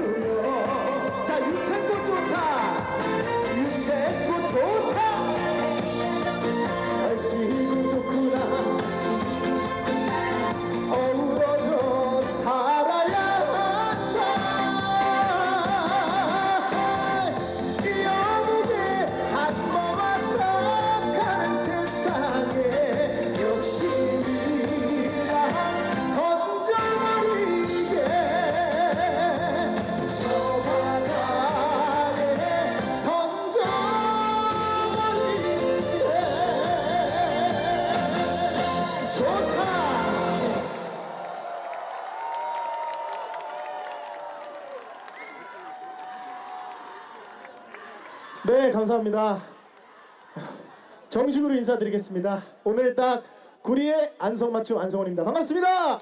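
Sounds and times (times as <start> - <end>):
band accompaniment: 0.0 - 40.9
person singing with vibrato: 0.0 - 41.2.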